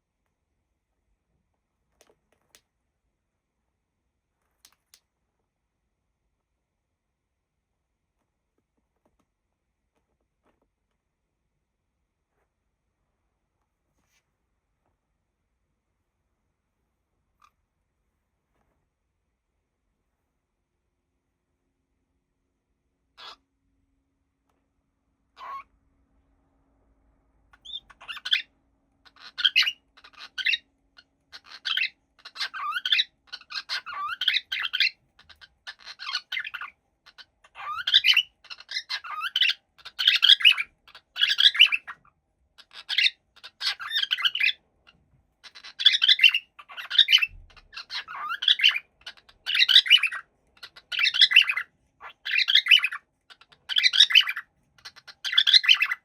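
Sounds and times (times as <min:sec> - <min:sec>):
cockatiel chirping and warbling: 0:23.2 - 0:23.4, 0:25.4 - 0:25.8, 0:27.5 - 0:56.0.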